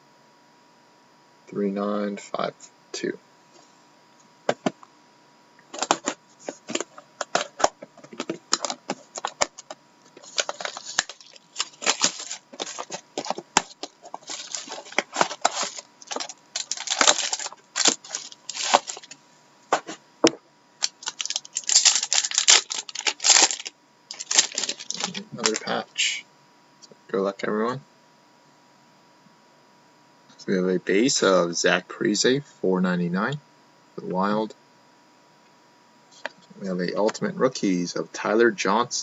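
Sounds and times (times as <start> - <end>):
cards clicking and tapping: 5.7 - 19.2
packaging rustling and tearing: 5.7 - 19.2, 20.8 - 25.8.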